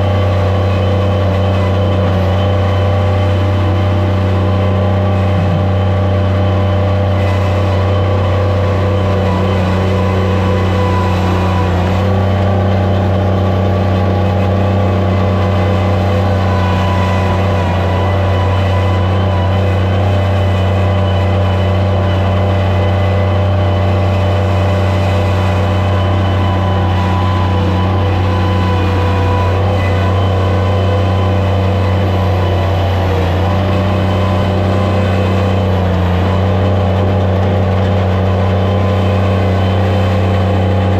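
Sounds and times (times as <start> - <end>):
loader engine droning: 0.0 - 40.9
steady whine: 0.0 - 40.9.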